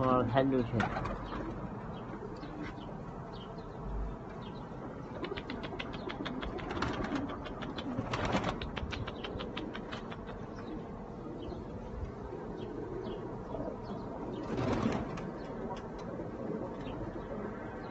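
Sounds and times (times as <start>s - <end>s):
pigeons cooing: 0.0s - 17.9s
rapid wing flapping: 5.2s - 10.5s, 14.4s - 16.1s.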